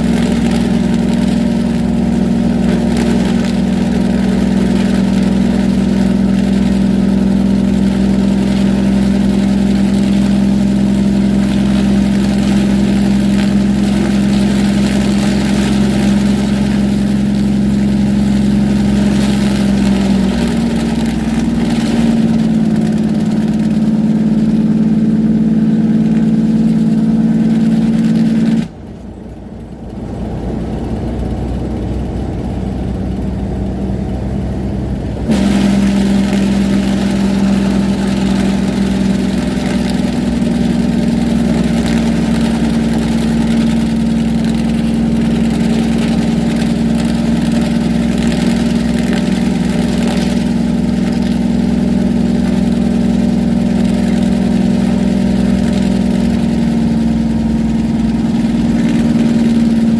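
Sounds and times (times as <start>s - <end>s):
truck engine running: 0.0s - 59.9s.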